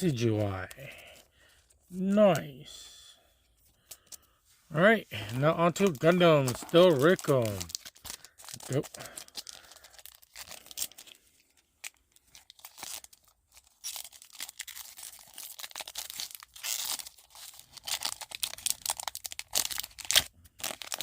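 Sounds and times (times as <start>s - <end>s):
wrapper crinkling and tearing: 5.2s - 21.0s.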